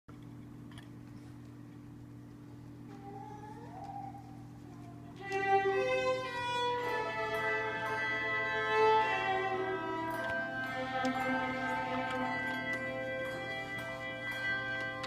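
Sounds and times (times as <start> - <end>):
faint hum: 0.1 - 15.0
handbell choir ringing chords: 5.6 - 15.0.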